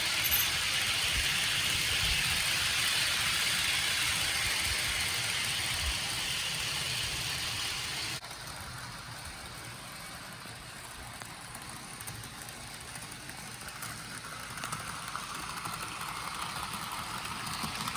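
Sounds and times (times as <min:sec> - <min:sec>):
model train running on track: 0:00.0 - 0:17.9.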